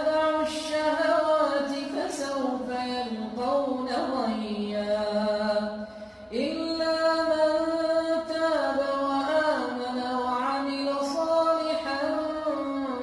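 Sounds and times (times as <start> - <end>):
melodic recitation voice: 0.0 - 13.0.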